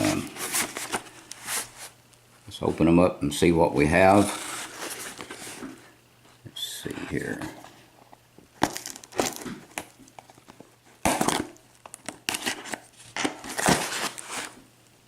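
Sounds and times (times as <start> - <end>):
packaging crinkling and tearing: 8.6 - 14.6.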